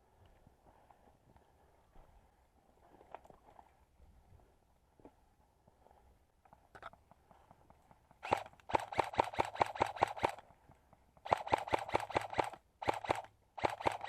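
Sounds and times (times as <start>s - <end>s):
airsoft rifle firing bursts: 8.2s - 10.4s, 11.2s - 14.0s.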